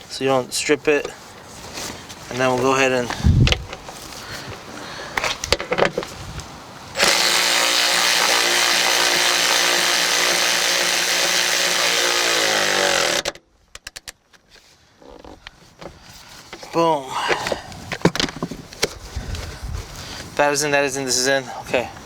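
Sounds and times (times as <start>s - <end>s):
cordless power gun running: 7.0s - 13.4s.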